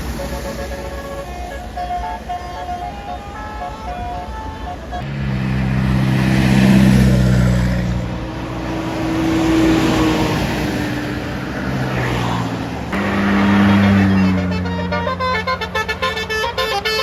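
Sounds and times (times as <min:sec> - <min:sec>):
bus horn playing tune: 0:00.0 - 0:06.5, 0:12.9 - 0:17.0
large vehicle engine: 0:00.0 - 0:17.0.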